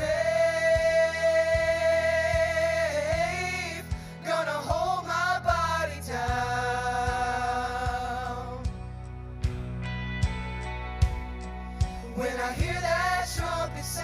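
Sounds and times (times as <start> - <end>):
worship band with singers: 0.0 - 10.4, 11.0 - 14.0
kick drum thumping: 0.7 - 4.1.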